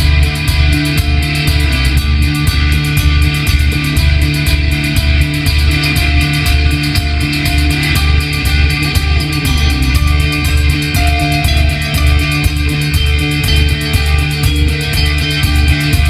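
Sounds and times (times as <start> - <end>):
loud rock music: 0.0 - 16.0.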